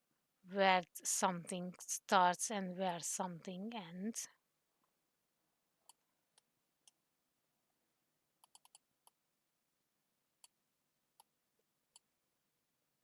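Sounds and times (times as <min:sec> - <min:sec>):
computer mouse clicks: 0:08.4 - 0:09.2.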